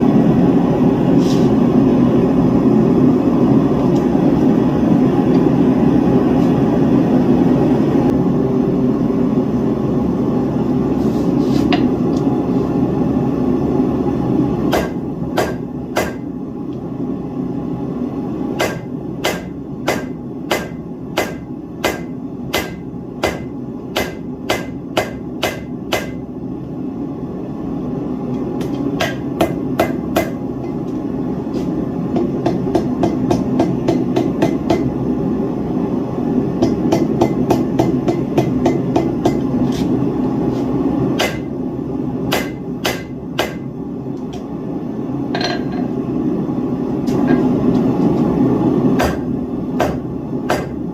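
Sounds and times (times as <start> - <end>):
hammer striking steel on anvil: 14.7 - 16.3, 18.6 - 26.2, 28.6 - 30.9, 32.2 - 34.9, 36.6 - 39.5, 41.2 - 41.5, 42.3 - 43.7, 49.0 - 50.8.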